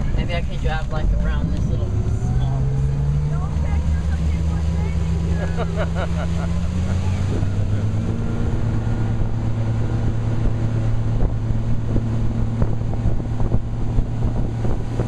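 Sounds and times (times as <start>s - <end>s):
motorboat engine running: 0.0s - 15.0s
wind on microphone: 6.6s - 15.0s.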